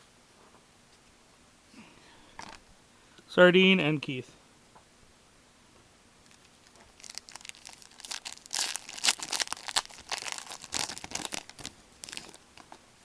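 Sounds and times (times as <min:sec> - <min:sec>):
wrapper tearing and crinkling: 0:06.2 - 0:12.8.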